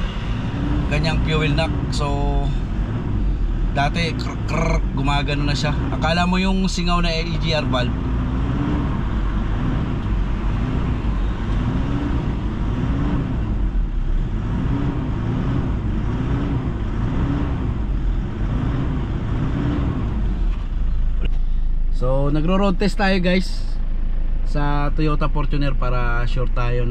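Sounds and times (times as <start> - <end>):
low pulsing hum: 0.0 - 5.2
car engine and road noise: 0.0 - 26.9.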